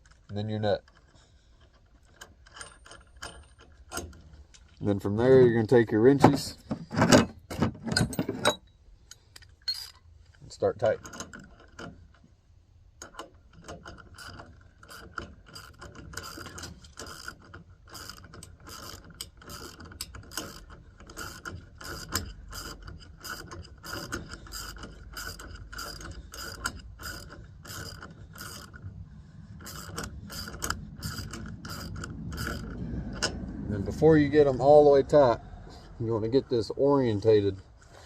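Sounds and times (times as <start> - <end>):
socket ratchet clicking: 13.0 - 33.7.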